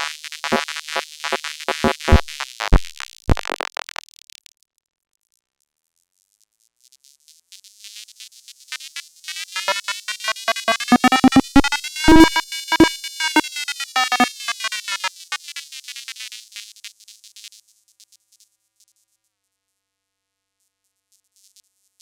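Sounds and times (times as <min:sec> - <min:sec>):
chattering robotic electronic tones: 0:00.0 - 0:03.9, 0:09.6 - 0:15.1
rapid electronic clicks: 0:00.0 - 0:04.4, 0:09.7 - 0:15.0.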